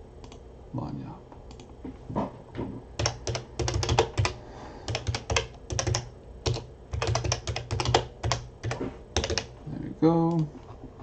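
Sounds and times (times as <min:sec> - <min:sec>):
computer keyboard typing: 0:03.0 - 0:09.6.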